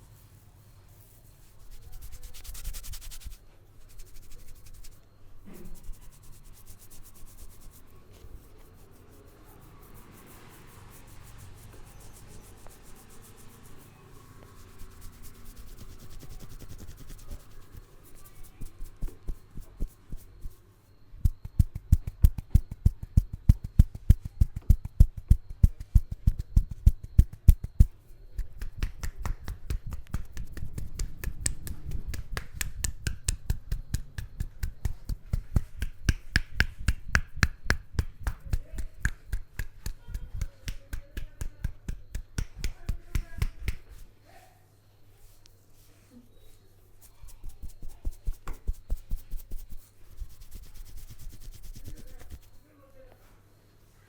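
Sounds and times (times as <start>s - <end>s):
hands rubbing hair and scalp: 0.0s - 20.6s, 21.2s - 44.1s, 46.8s - 52.6s
hands patting on head: 21.2s - 44.0s, 47.4s - 52.6s.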